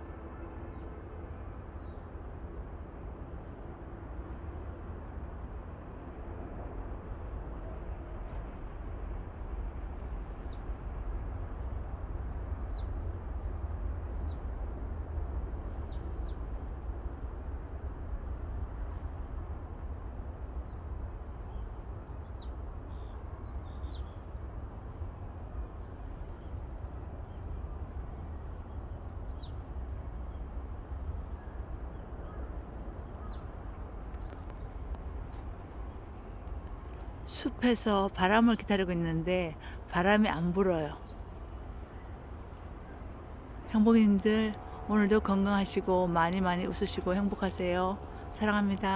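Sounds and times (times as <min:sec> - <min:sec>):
steady low rumble: 0:25.0 - 0:48.9
small birds chirping: 0:25.6 - 0:44.8.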